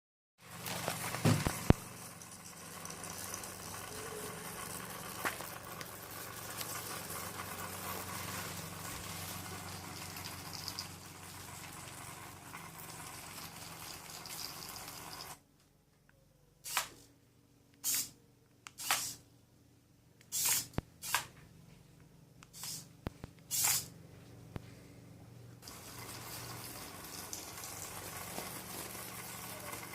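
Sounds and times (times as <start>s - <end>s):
small electric motors humming: 0.7s - 15.4s, 25.6s - 29.9s
short bursts of motor noise: 18.8s - 19.2s, 20.3s - 21.3s, 22.5s - 22.9s, 23.5s - 23.9s.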